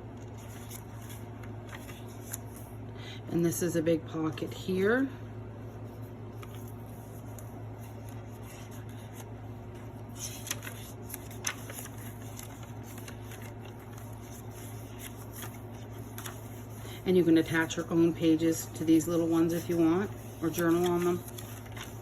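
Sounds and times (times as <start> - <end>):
steady low hum: 0.0 - 22.0
paper rustling and tapping: 10.1 - 16.7, 18.8 - 22.0.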